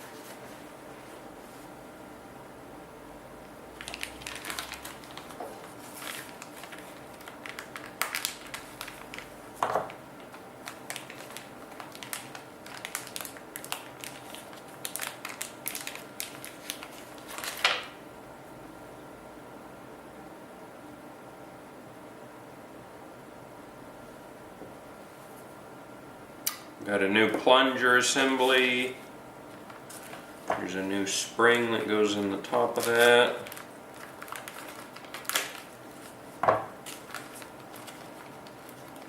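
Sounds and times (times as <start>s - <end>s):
hands rustling plastic wrapping: 3.8s - 18.0s, 29.5s - 39.0s.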